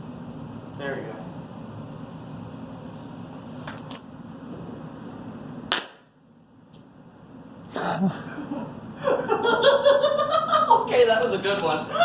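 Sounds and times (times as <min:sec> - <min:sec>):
sharp loud pop: 0:05.7 - 0:06.1.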